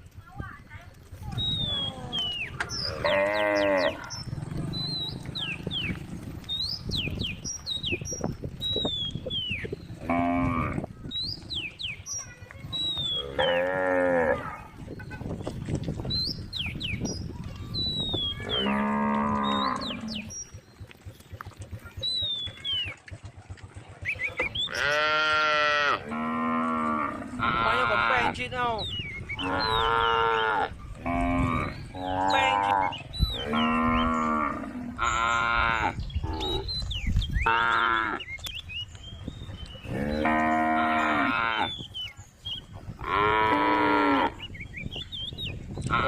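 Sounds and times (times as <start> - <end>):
cows mooing: 1.6 - 6.5, 9.9 - 10.9, 13.1 - 14.8, 18.3 - 20.4, 24.3 - 28.4, 29.4 - 36.7, 37.4 - 38.3, 39.8 - 41.8, 42.9 - 44.4.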